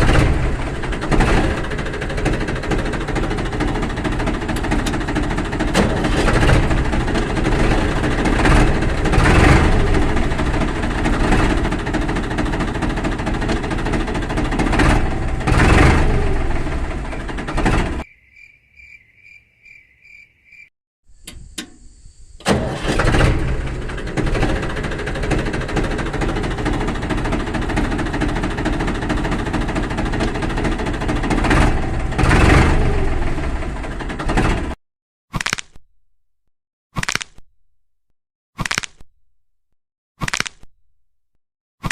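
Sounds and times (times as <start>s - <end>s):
small engine running: 0.0s - 18.0s, 22.4s - 34.8s.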